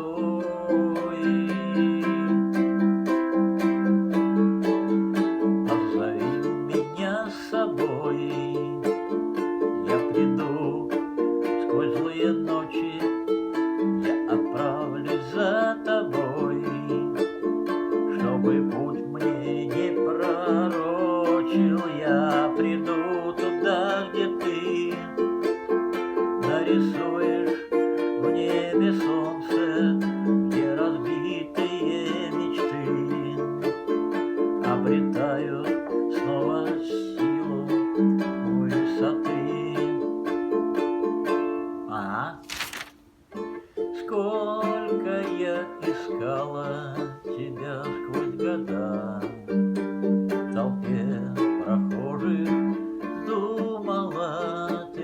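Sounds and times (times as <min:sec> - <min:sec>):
ukulele strummed: 0:00.0 - 0:55.0.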